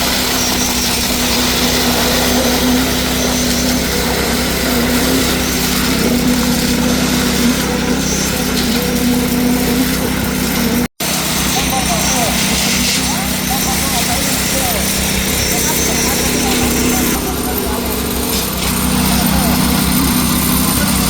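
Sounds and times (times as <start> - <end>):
machinery engine droning: 0.0 - 21.0.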